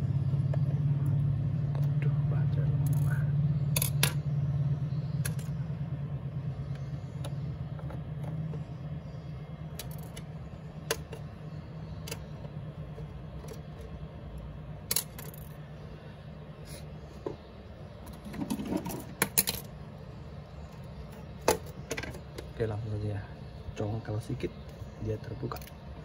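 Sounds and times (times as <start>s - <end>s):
low hum: 0.0s - 26.0s.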